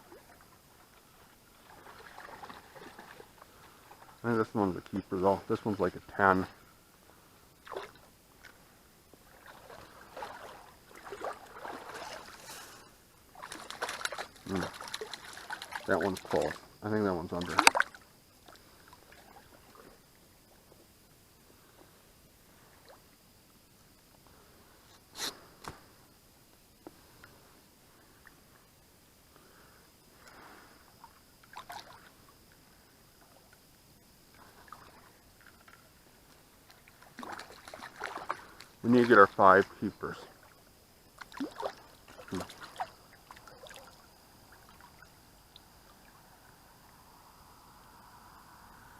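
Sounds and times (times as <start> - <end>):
creek water splashing: 0.0 - 20.6, 29.4 - 47.2.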